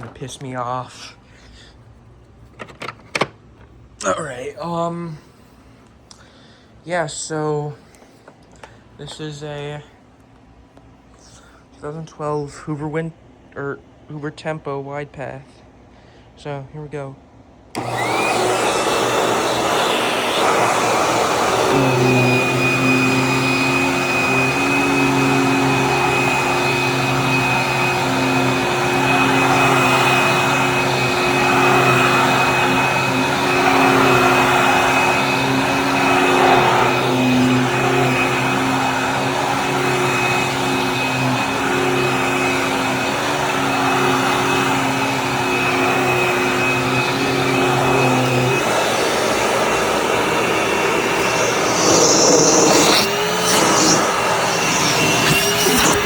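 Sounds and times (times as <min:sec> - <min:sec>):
vacuum cleaner motor whine: 0:17.7 - 0:56.0.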